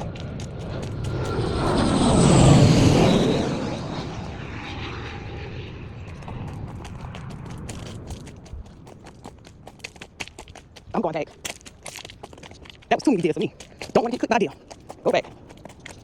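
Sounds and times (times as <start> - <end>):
aircraft engine passing over: 0.0 - 10.2.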